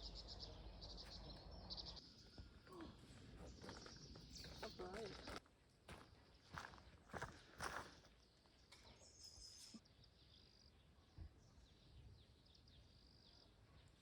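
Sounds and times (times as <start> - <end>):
short bird chirps: 8.8 - 10.2.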